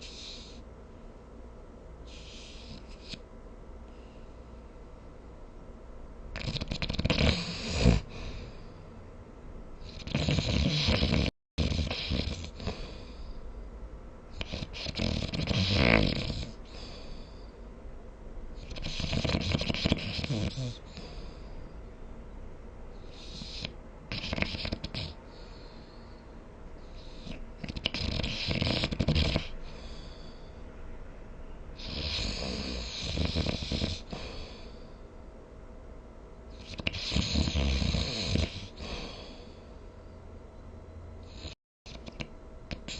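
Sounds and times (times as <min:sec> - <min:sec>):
quiet breath: 0:03.8 - 0:05.1, 0:07.4 - 0:09.1, 0:12.5 - 0:13.9, 0:16.5 - 0:17.9, 0:20.8 - 0:22.1, 0:25.1 - 0:27.6, 0:29.5 - 0:31.1, 0:34.0 - 0:35.4, 0:38.6 - 0:40.4
person snoring: 0:06.4 - 0:08.5, 0:09.8 - 0:13.2, 0:14.4 - 0:17.2, 0:18.6 - 0:21.2, 0:27.2 - 0:30.0, 0:31.8 - 0:34.7, 0:36.6 - 0:39.6.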